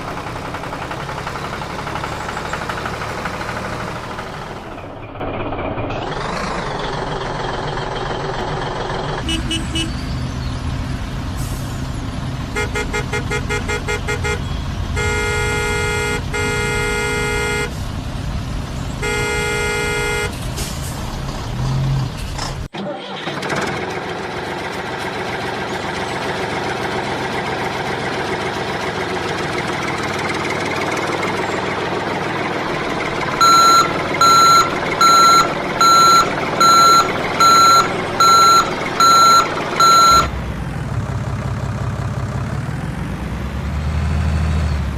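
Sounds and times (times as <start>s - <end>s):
heavy vehicle engine running: 0.0s - 44.9s
horn toots and honks: 9.2s - 10.0s, 12.5s - 17.8s, 19.0s - 20.4s, 33.4s - 40.3s
reversing alarm beeping: 33.4s - 40.3s.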